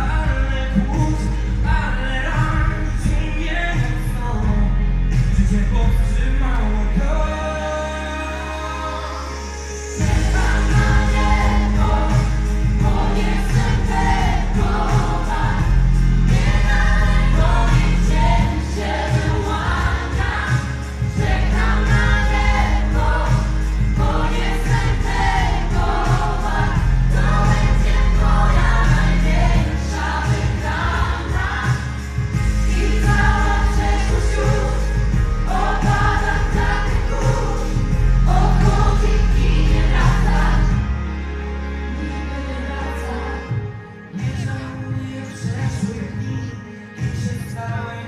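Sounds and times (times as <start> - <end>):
steady drum beat: 0.0 - 6.3, 10.0 - 41.0
bass line: 0.0 - 45.9
live band playing: 0.0 - 48.0
vocal group singing in harmony: 0.0 - 48.0.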